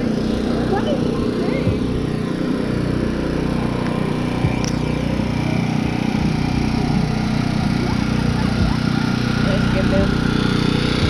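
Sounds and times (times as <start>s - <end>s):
small vehicle engine running: 0.0s - 11.0s.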